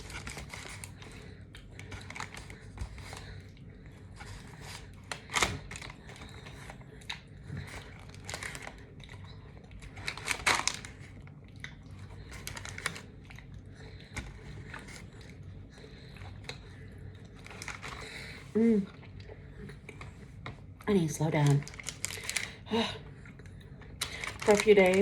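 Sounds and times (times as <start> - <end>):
crinkly clicks: 0.0 - 3.4, 4.2 - 13.4, 16.4 - 18.4, 21.4 - 22.6, 23.4 - 25.0
chewing and mouth noises: 0.0 - 20.8.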